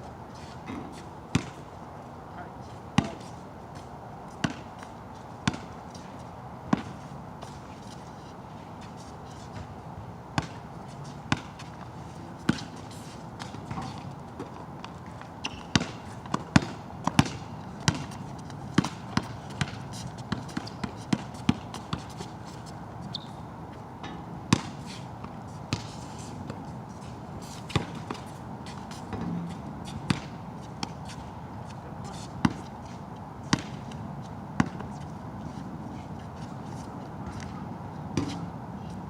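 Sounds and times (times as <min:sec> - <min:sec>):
basketball bouncing on wet court: 0:01.3 - 0:01.6, 0:04.4 - 0:04.6, 0:05.4 - 0:05.7, 0:10.4 - 0:10.6, 0:11.3 - 0:11.6, 0:14.8 - 0:18.2, 0:18.8 - 0:22.1, 0:24.5 - 0:24.8, 0:27.7 - 0:28.2, 0:29.1 - 0:30.9, 0:33.5 - 0:33.8, 0:34.6 - 0:34.8, 0:38.2 - 0:38.4.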